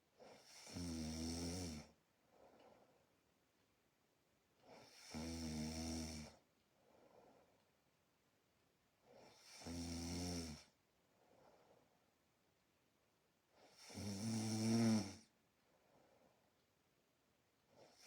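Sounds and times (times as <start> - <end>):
person snoring: 0.3 - 1.9, 4.7 - 6.4, 9.2 - 10.7, 13.7 - 15.3
soft breathing: 2.2 - 3.3, 6.7 - 7.9, 11.0 - 12.2, 15.6 - 16.6.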